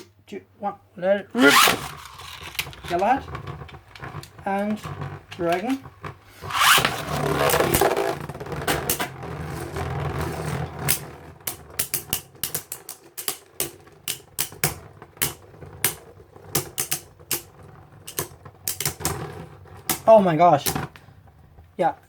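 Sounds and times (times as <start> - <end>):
spinning tops clacking together: 1.4 - 5.8, 6.5 - 19.2
spinning tops whirring: 1.4 - 21.8.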